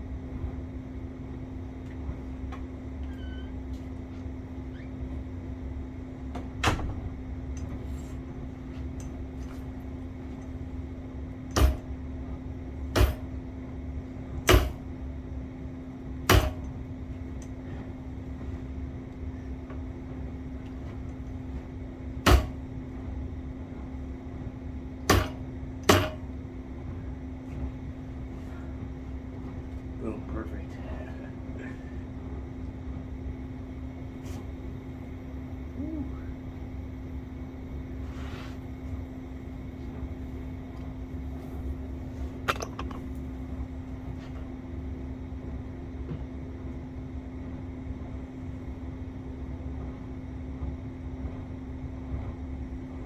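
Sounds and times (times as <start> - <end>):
sharp knocks on handlebar: 11.6 - 11.9, 13.0 - 13.3, 14.5 - 14.8, 16.3 - 16.7, 22.3 - 22.6, 25.1 - 26.2.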